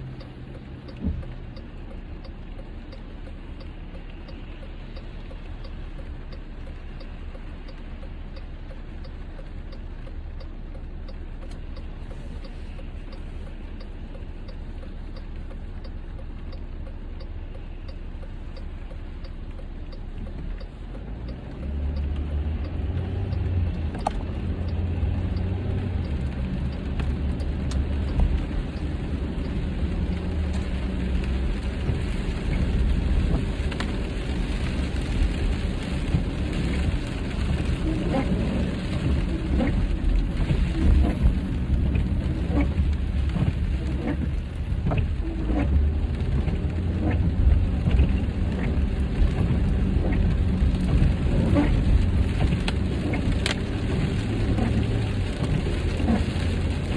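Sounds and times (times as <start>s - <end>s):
faint regular ticking: 0.0s - 56.9s
low rumble: 0.0s - 56.9s
rain on windshield: 0.0s - 56.9s
tyres rushing on road: 18.2s - 56.9s.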